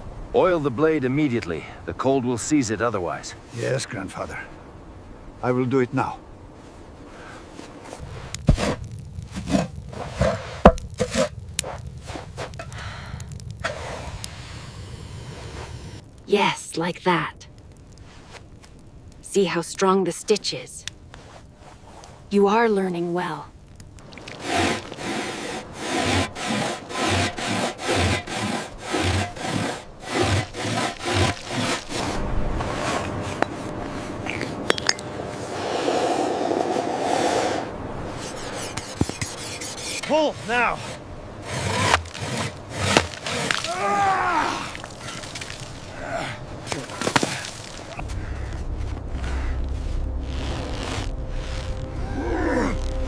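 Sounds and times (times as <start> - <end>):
rhythmic sawing strokes: 24.3 - 32.2, 38.1 - 43.7
scrapes and knocks: 38.2 - 43.7.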